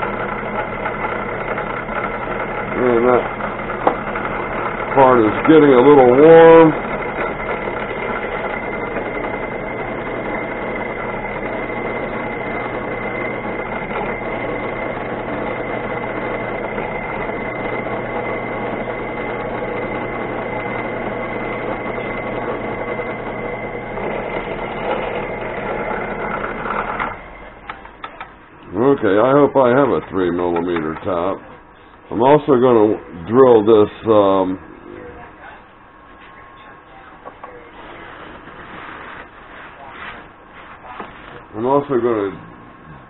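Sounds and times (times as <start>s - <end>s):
drill boring through metal: 0.0s - 27.8s.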